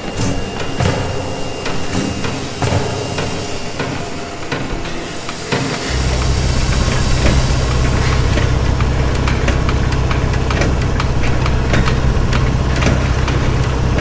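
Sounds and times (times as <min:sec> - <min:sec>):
machinery low drone: 0:00.0 - 0:14.0
sharp clicks and clanks: 0:05.5 - 0:14.0.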